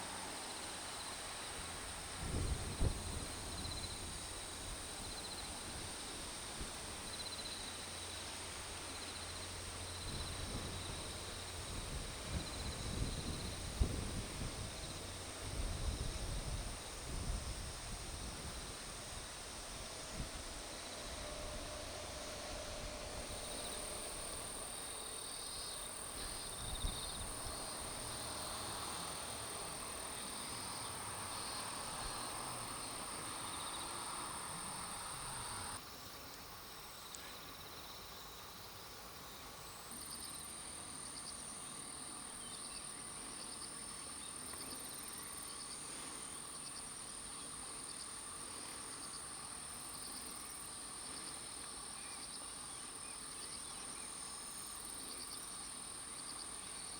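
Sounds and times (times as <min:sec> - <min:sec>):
crickets trilling: 0:00.0 - 0:56.9
insect chirping in rapid pulses: 0:02.0 - 0:36.1.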